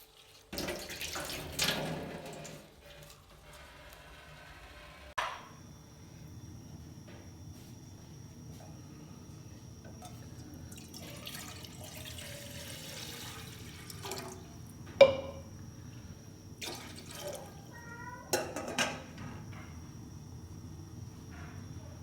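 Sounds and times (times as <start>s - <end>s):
water pouring: 0.0s - 3.4s, 10.0s - 14.6s, 16.6s - 17.6s
ringing knock of kitchenware: 15.0s - 15.5s.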